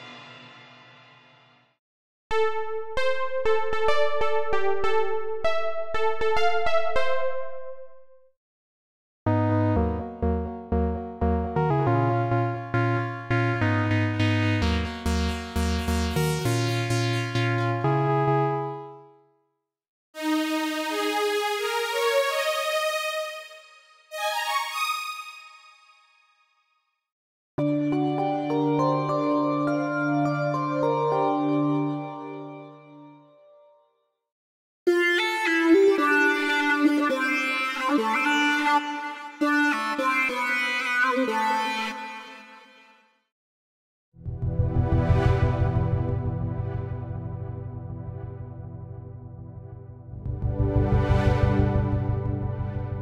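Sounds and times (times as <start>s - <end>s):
bass-heavy synthesizer patch: 9.3s - 18.7s, 44.3s - 53.0s
synthesizer melody of struck notes: 9.3s - 19.0s, 44.4s - 53.0s.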